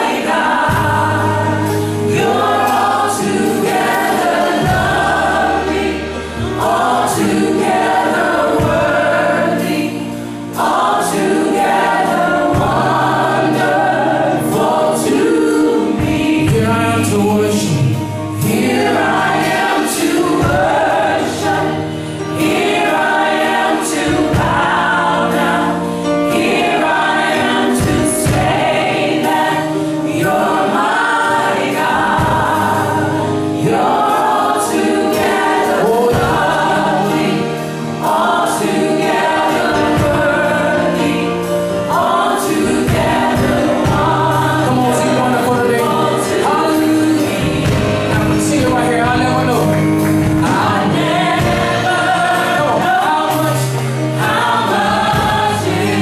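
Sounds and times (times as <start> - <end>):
band playing worship music: 0.0 - 56.0
many voices singing together: 0.0 - 56.0
drum hits: 22.4 - 25.4.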